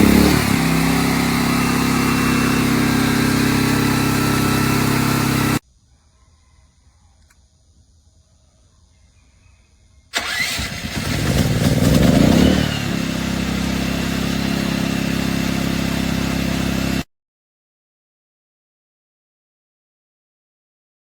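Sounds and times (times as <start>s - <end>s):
generator engine starting and running: 0.0s - 5.6s, 10.2s - 17.1s.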